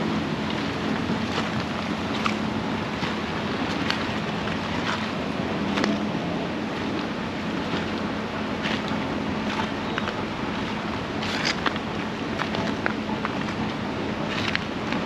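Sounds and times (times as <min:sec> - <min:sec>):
river flowing: 0:00.0 - 0:15.0.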